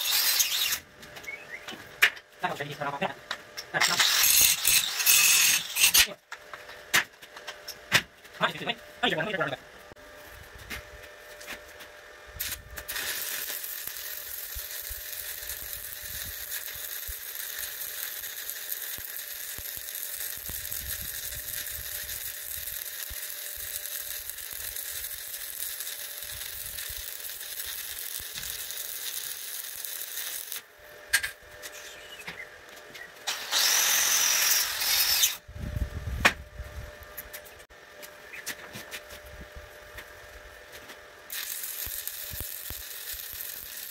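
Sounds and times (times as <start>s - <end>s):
welding arc crackling hiss: 0.0s - 1.3s, 3.6s - 6.2s, 12.4s - 32.2s, 33.2s - 35.4s, 41.3s - 43.9s.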